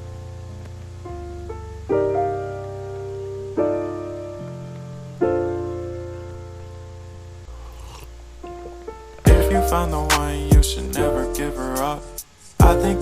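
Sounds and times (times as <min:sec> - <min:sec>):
piano chords: 0:00.0 - 0:13.0
bass line: 0:08.6 - 0:13.0.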